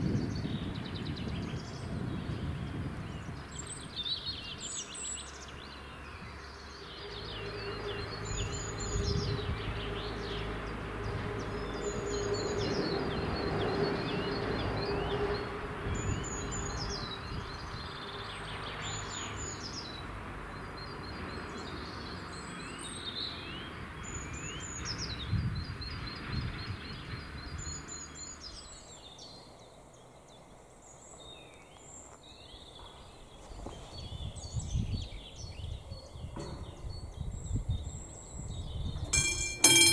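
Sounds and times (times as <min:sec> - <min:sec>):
bird singing falling notes: 0:38.9 - 0:39.9.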